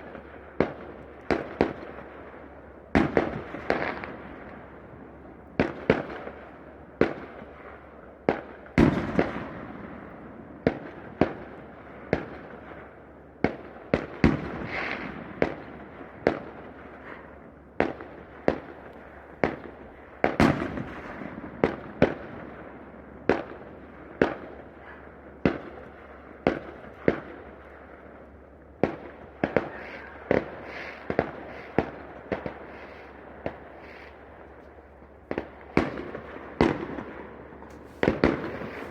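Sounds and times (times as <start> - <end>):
fireworks rumble and crackle: 0.0 - 38.9
fireworks bursting: 35.3 - 38.9.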